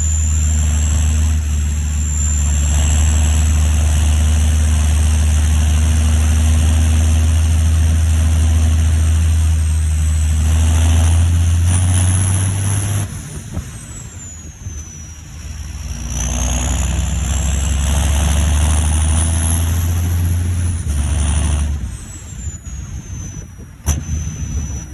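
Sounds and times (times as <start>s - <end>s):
tractor engine drone: 0.0s - 24.9s
turbo whistle: 0.0s - 24.9s.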